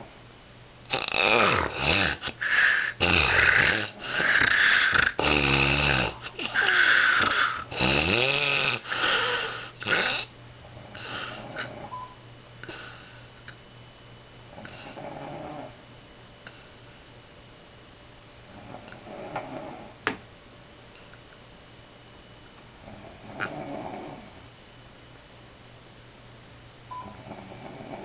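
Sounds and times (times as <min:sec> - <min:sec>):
man snoring: 0:00.9 - 0:10.3, 0:14.7 - 0:15.7, 0:22.9 - 0:24.3, 0:27.1 - 0:28.0.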